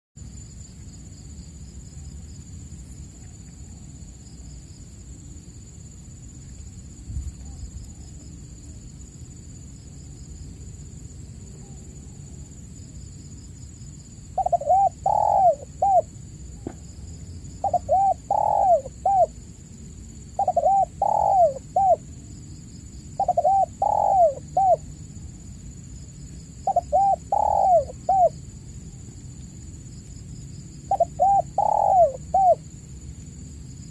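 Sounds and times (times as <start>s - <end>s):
low background noise: 0.2s - 33.9s
dove cooing: 14.4s - 16.7s, 17.6s - 19.4s, 20.4s - 22.1s, 23.2s - 24.9s, 26.6s - 28.4s, 30.9s - 32.6s.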